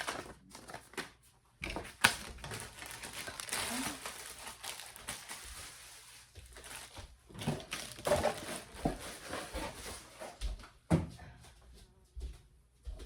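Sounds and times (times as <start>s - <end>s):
packaging rustling and crinkling: 0.0s - 10.4s.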